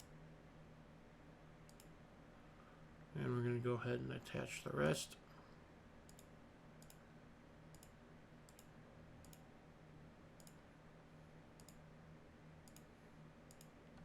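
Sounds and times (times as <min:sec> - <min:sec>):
low steady hum: 0:00.0 - 0:14.0
computer mouse clicks: 0:01.7 - 0:02.0, 0:06.1 - 0:07.0, 0:07.7 - 0:09.4, 0:10.4 - 0:10.6, 0:11.6 - 0:11.8, 0:12.6 - 0:12.9, 0:13.5 - 0:14.0.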